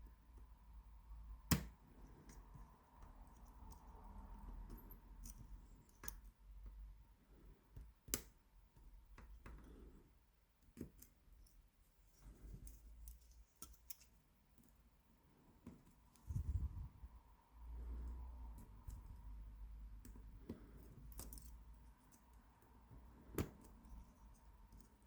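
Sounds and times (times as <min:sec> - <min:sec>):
lock picking clicks and scraping: 0:04.7 - 0:06.4, 0:12.4 - 0:14.2, 0:20.5 - 0:22.4.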